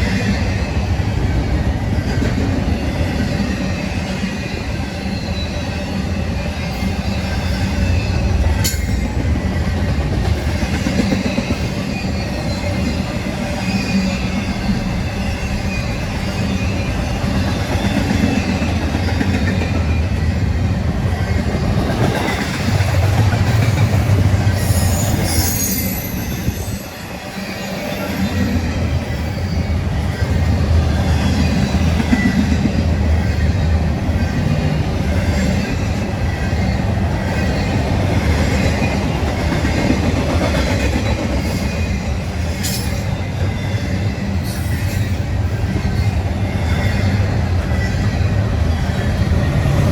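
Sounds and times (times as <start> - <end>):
train wheels rumbling on rail: 0.0 - 49.9
high wheel squeal: 11.0 - 18.5, 24.5 - 30.4.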